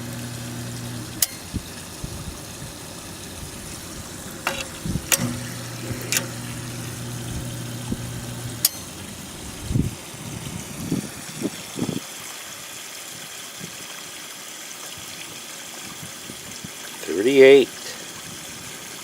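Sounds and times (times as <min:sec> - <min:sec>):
electric pump hum: 0:00.0 - 0:12.0, 0:16.0 - 0:19.0
water running: 0:00.0 - 0:12.0, 0:16.0 - 0:19.0
pressure switch clicks: 0:04.4 - 0:08.9.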